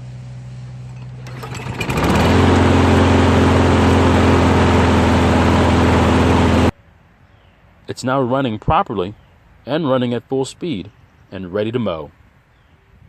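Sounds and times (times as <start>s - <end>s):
lawn mower engine running: 0.0s - 6.7s.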